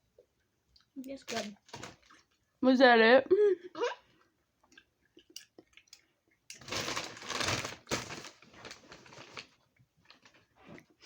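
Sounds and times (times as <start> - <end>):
plastic packaging crinkling: 1.2 - 2.3, 6.6 - 10.6.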